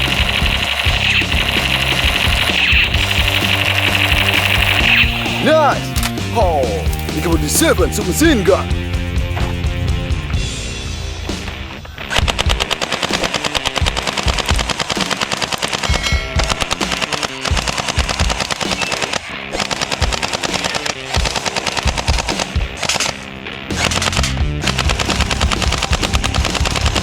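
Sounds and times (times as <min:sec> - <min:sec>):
rapid automatic gunfire: 0:00.0 - 0:05.5, 0:12.1 - 0:27.0
music: 0:00.0 - 0:27.0.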